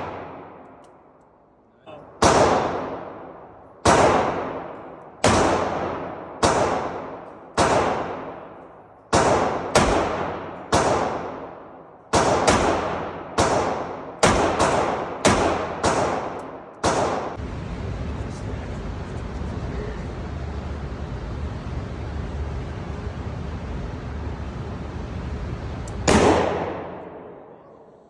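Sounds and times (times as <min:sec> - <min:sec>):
revolver shots echoing: 0:02.0 - 0:17.4, 0:26.0 - 0:28.0.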